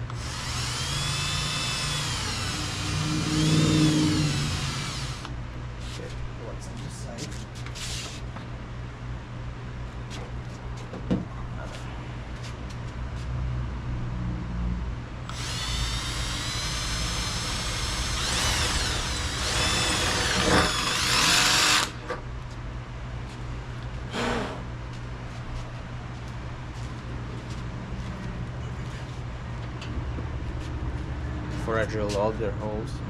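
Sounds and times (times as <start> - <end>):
power drill boring metal: 0.0 - 5.3, 15.3 - 22.0.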